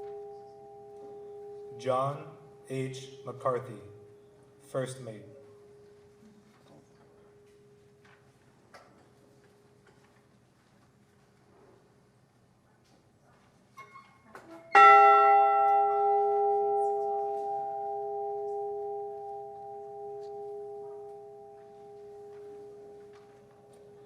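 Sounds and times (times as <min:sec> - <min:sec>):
large bell ringing: 0:00.0 - 0:04.1, 0:14.7 - 0:24.0.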